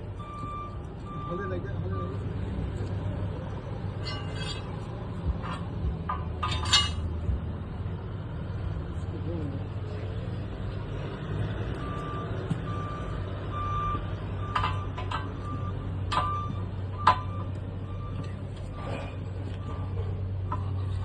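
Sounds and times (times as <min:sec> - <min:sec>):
engine humming: 0:00.0 - 0:21.0
reverse alarm beeping: 0:00.2 - 0:02.2, 0:11.8 - 0:18.8.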